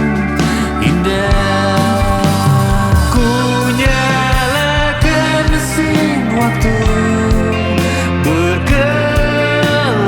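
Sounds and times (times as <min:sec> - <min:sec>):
bending guitar notes: 0:00.0 - 0:10.0
rock band music: 0:00.0 - 0:10.0
drum hits: 0:01.4 - 0:06.1.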